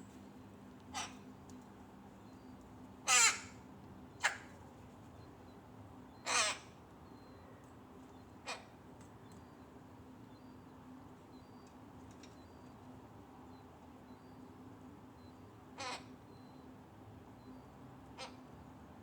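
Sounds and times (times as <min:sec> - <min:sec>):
rook cawing: 0:03.1 - 0:03.5.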